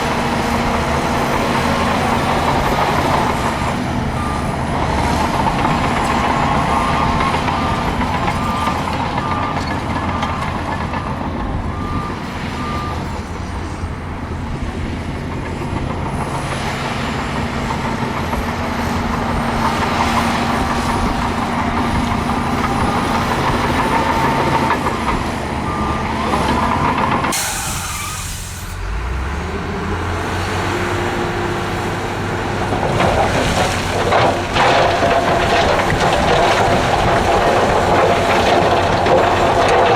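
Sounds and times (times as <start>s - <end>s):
diesel earthmoving machinery: 0.0s - 39.9s
reversing alarm beeping: 3.0s - 13.8s, 22.7s - 28.4s.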